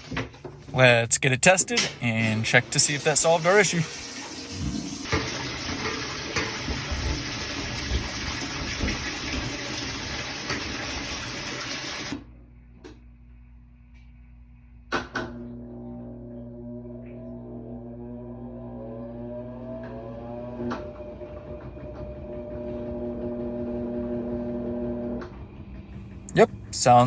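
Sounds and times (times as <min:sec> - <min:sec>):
water rushing into washing machine: 0:00.0 - 0:00.9, 0:01.7 - 0:12.2.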